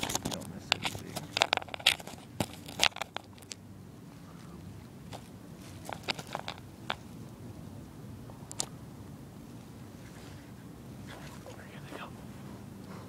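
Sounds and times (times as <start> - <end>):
crackling rustles and clicks: 0.0 - 3.6, 4.2 - 7.4.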